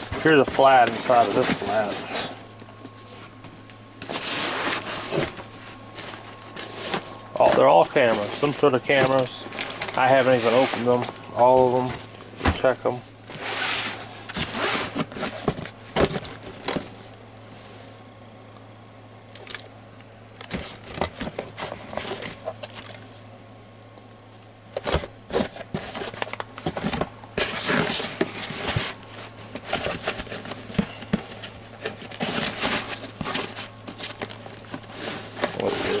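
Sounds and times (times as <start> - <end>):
camera gear rummaged in a box: 4.0 - 12.8, 24.8 - 36.0.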